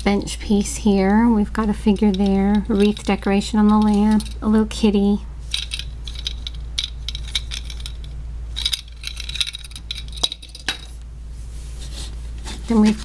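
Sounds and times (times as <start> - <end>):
plastic bricks clicking and rattling: 1.6 - 4.4, 5.5 - 10.9.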